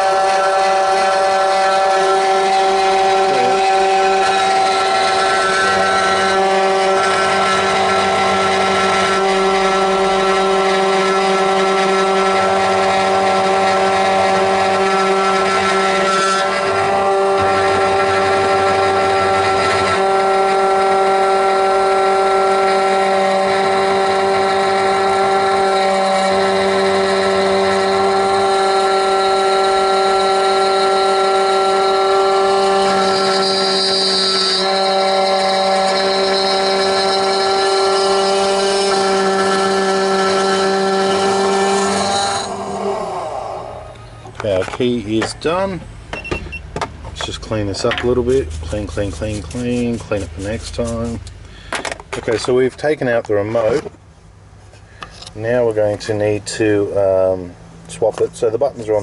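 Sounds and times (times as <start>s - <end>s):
key cutting machine motor whine: 16.4s - 44.3s.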